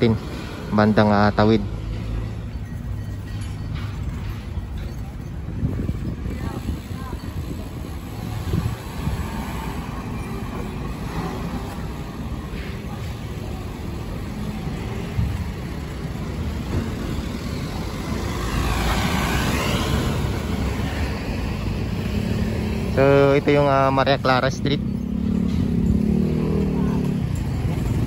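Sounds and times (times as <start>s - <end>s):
traffic rumble: 0.0s - 28.0s
vehicle passing close: 16.6s - 28.0s.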